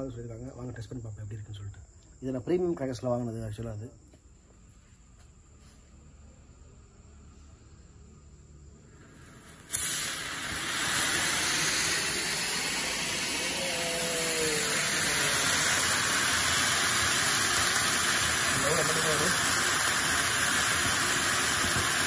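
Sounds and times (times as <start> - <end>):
firework fountain hissing: 5.0 - 22.0.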